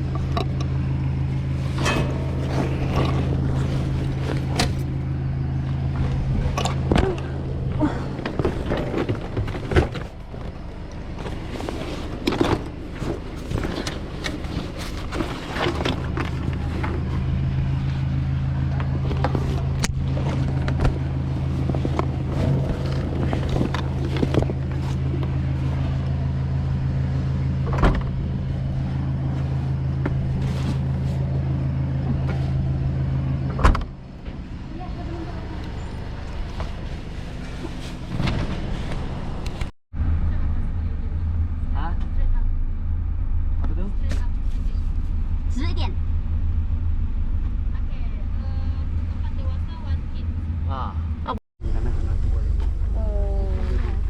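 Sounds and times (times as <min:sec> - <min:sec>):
car engine and road hum: 0:00.0 - 0:54.0.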